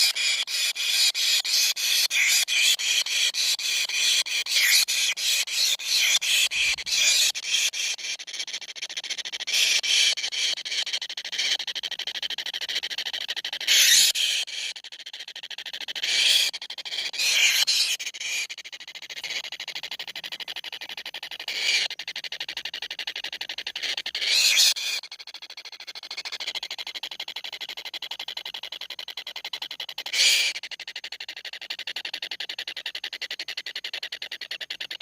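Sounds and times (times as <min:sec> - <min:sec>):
nestlings hissing begging calls: 0:00.0 - 0:11.6, 0:13.6 - 0:14.8, 0:15.9 - 0:18.5, 0:21.4 - 0:22.0, 0:23.7 - 0:25.2, 0:30.0 - 0:30.6.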